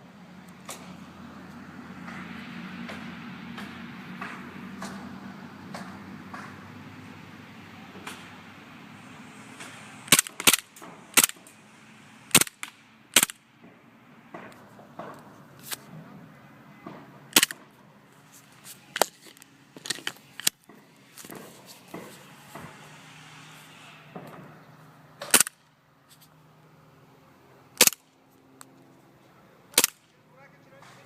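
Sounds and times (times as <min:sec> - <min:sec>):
airsoft pistol shots: 0:10.1 - 0:11.4, 0:12.3 - 0:13.4, 0:25.3 - 0:25.6, 0:27.8 - 0:28.0, 0:29.8 - 0:30.0.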